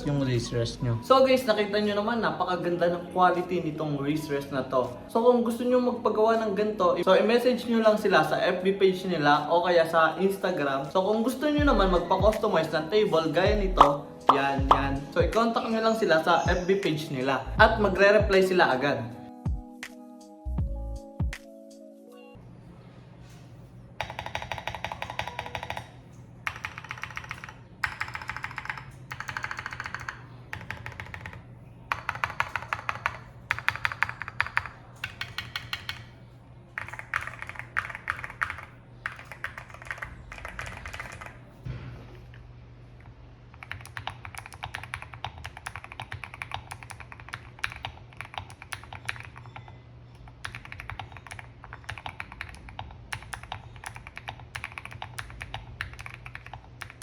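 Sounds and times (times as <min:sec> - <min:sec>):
mechanical keyboard typing: 0:24.0 - 0:36.1, 0:36.8 - 0:41.4, 0:43.5 - 0:57.0.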